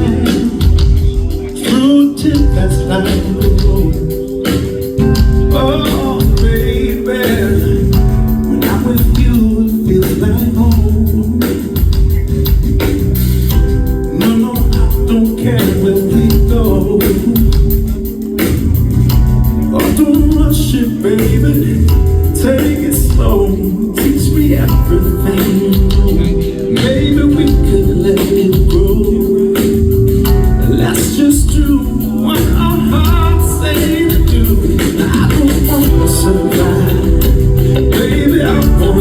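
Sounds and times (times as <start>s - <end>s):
male lead vocal: 0.0s - 12.4s, 13.6s - 18.6s, 19.6s - 39.0s
bass: 0.0s - 39.0s
drums: 0.0s - 39.0s.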